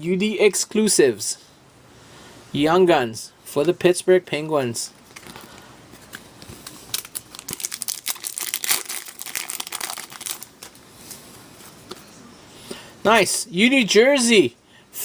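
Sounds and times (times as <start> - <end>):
wrapper crinkling: 5.1 - 10.8
wrapper tearing: 6.6 - 10.8.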